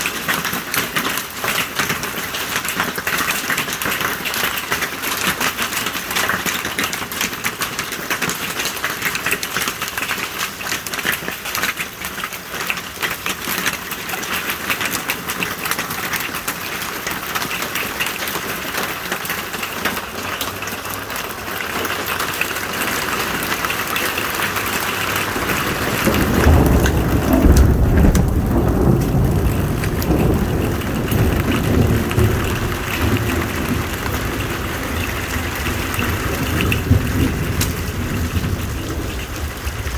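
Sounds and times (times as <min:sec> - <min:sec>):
heavy rain and hail clattering: 0:00.0 - 0:39.9
deep rumble of thunder: 0:24.3 - 0:39.9.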